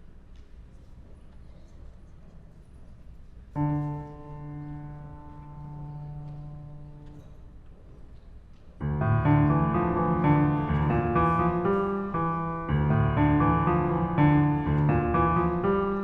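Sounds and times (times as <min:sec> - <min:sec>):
solo piano chords: 0:03.6 - 0:07.3, 0:08.8 - 0:16.0.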